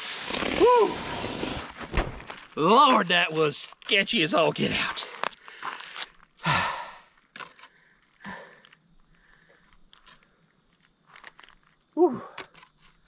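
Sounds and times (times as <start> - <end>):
man sighing heavily: 6.4 - 7.1, 8.2 - 8.7, 12.0 - 12.5.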